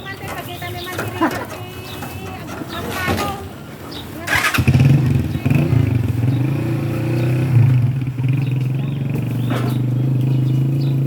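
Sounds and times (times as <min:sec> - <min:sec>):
small engine humming: 0:04.3 - 0:11.0.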